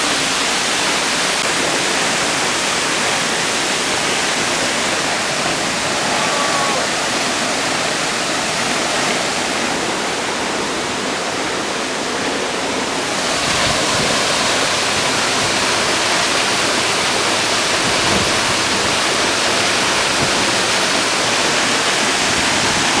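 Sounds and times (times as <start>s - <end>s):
waterfall roaring: 0.0s - 23.0s.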